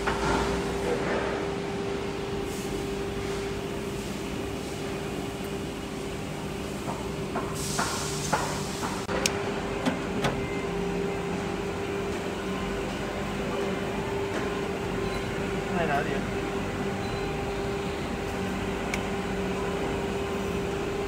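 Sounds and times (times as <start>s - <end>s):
electrical machine hum: 0.0s - 21.0s.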